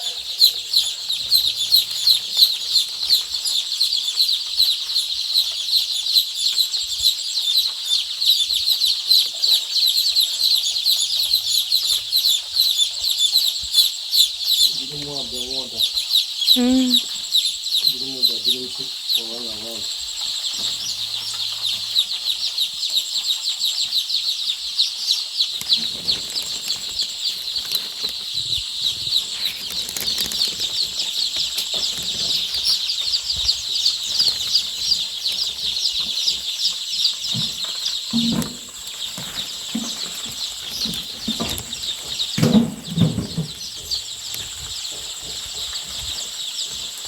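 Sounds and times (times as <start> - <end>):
chicks peeping: 0.0 - 47.0
low thuds or rustles: 37.4 - 46.3.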